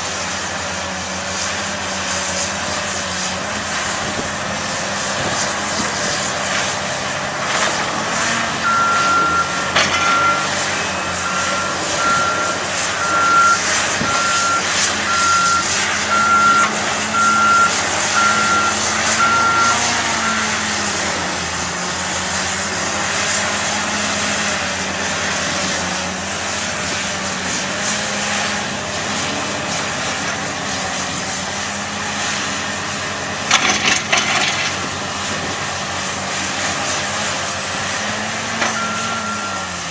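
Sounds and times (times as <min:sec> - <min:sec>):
diesel machinery engine: 0:00.0 - 0:39.9
reverse alarm beeping: 0:08.6 - 0:20.6, 0:38.6 - 0:39.8.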